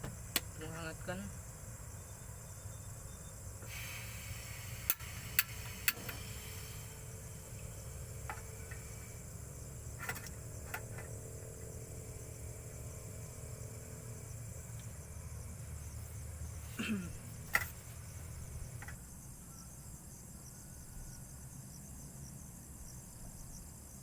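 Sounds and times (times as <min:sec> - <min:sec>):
steady low rumble: 0:00.0 - 0:18.9
faint insect chirring: 0:00.0 - 0:24.0.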